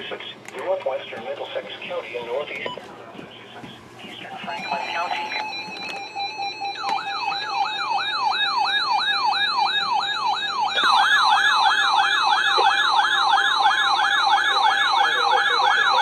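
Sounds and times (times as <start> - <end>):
electronic siren wailing: 4.7 - 16.0.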